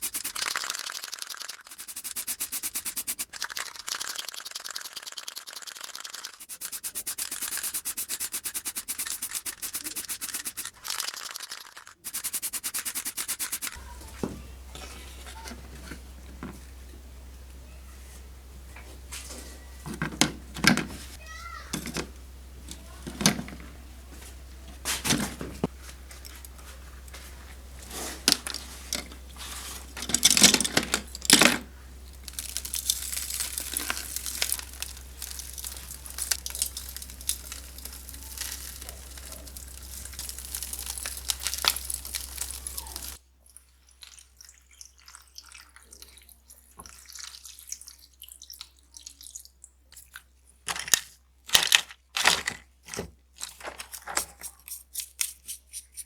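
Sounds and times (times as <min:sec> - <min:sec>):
scratchy rubbing and crunching: 0:00.0 - 0:14.1, 0:24.7 - 0:43.2
steady low hum: 0:12.1 - 0:43.2.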